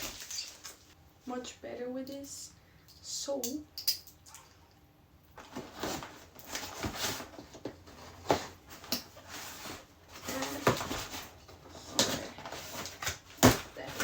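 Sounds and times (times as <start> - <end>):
packaging rustling: 0.0 - 1.0, 5.4 - 14.0.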